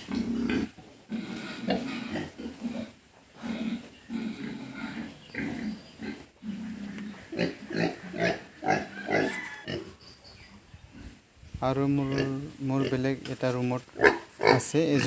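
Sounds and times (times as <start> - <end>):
pigs grunting: 0.0 - 10.0, 14.0 - 15.0.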